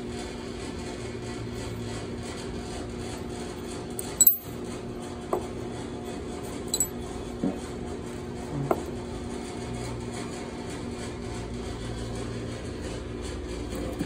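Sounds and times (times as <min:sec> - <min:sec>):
metallic clinks of tools: 0:04.0 - 0:04.5, 0:06.7 - 0:06.9
steady low hum: 0:06.7 - 0:06.9.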